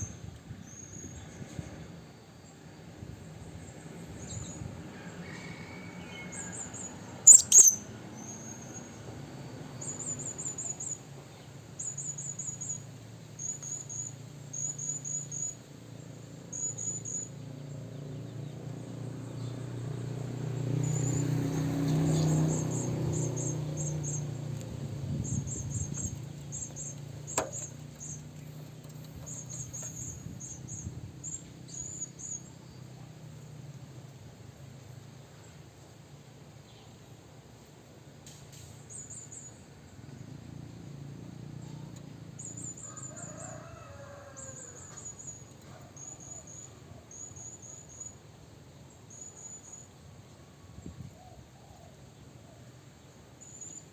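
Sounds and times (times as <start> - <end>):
parrot high thin chirps: 7.3 - 7.8.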